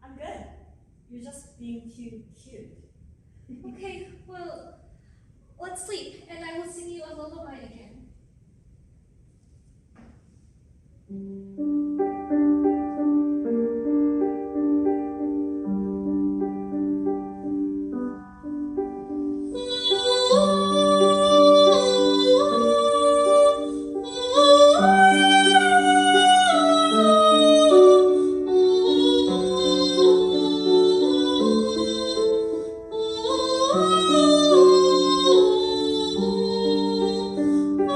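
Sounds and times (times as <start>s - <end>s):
gentle instrumental accompaniment: 11.1s - 37.9s
woman singing: 19.6s - 37.9s.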